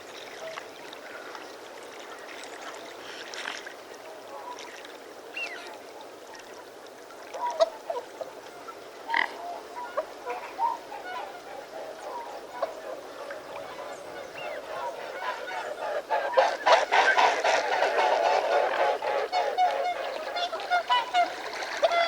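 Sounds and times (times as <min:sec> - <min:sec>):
swans calling: 0:09.1 - 0:22.0.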